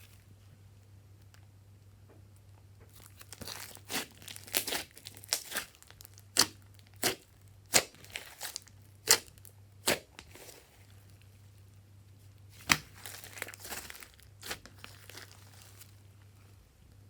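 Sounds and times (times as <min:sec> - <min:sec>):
slime popping and crackling: 0:02.9 - 0:11.0, 0:12.6 - 0:16.0.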